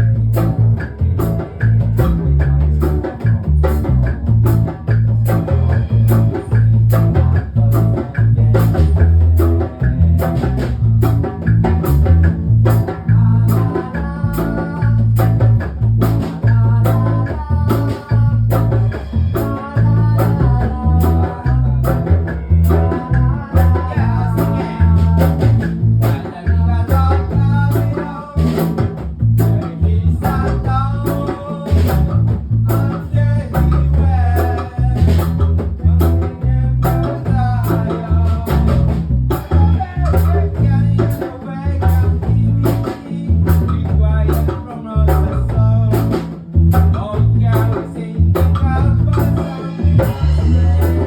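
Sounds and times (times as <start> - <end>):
bass line: 0.0 - 51.0
drum kit beat: 0.0 - 51.0
electric guitar: 0.0 - 51.0
person singing: 12.8 - 15.6, 16.2 - 28.9, 29.6 - 51.0.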